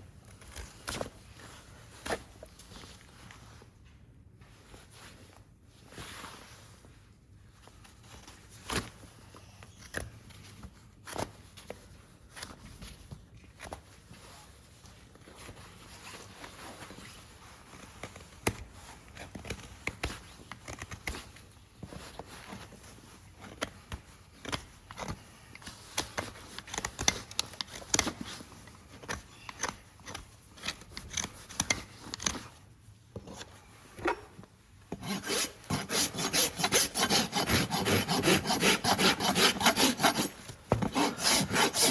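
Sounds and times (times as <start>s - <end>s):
hoof trimming tools scraping: 34.9s - 41.9s.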